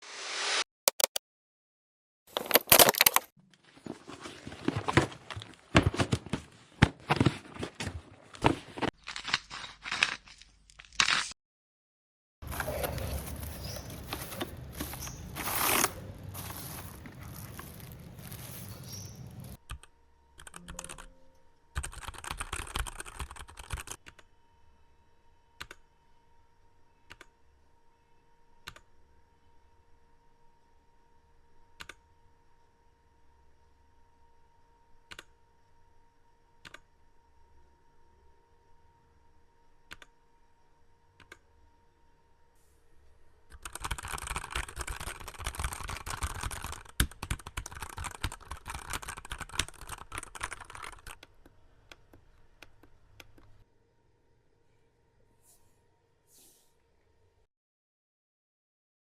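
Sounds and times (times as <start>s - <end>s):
packaging clicking and crackling: 2.3s - 3.3s, 12.4s - 19.6s, 43.6s - 51.5s
packaging rustling and tearing: 2.3s - 11.4s, 12.4s - 19.6s, 44.0s - 46.9s
faint steady hum: 24.0s - 43.6s.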